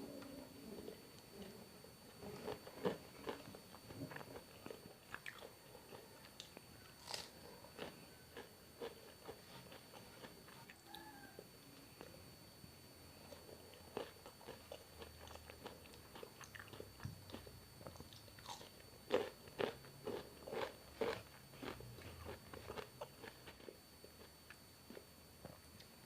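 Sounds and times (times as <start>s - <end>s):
food crunching: 0.8s - 11.3s, 13.2s - 25.9s
person chewing wetly: 1.3s - 11.0s, 13.3s - 25.9s.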